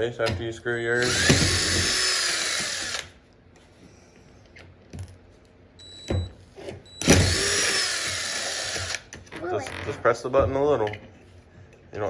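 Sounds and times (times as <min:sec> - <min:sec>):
power drill whining: 0:01.0 - 0:03.1, 0:07.0 - 0:09.1.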